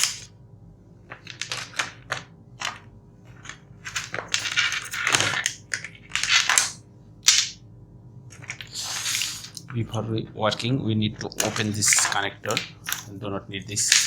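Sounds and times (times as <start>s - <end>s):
crinkling rustles of handling: 1.1s - 6.7s.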